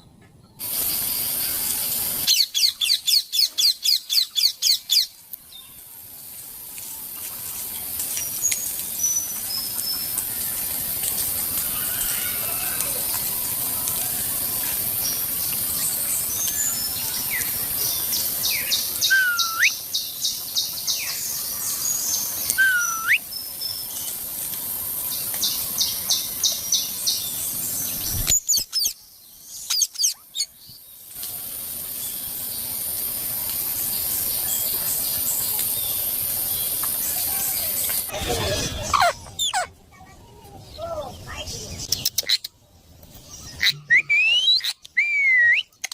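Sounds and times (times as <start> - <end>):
steady hiss: 0.6 - 40.0
parrot chirping: 18.5 - 19.8, 22.5 - 23.2, 38.9 - 39.7
parrot whistles sweeping upward: 19.0 - 19.8, 22.6 - 23.2.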